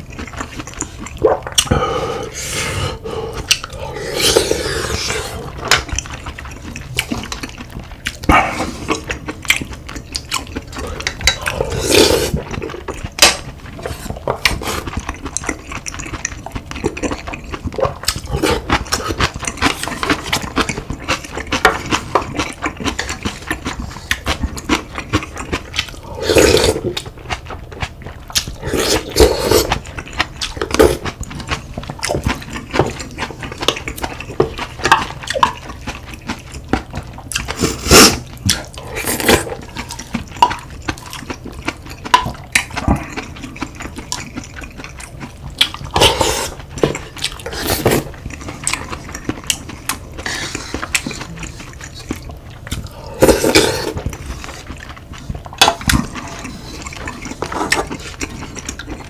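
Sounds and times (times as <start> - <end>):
slurping soup: 0.2 - 7.4, 8.1 - 9.4, 10.6 - 12.9, 13.7 - 16.3, 17.0 - 20.8, 21.5 - 27.4, 28.4 - 31.6, 37.4 - 41.8, 45.7 - 59.0.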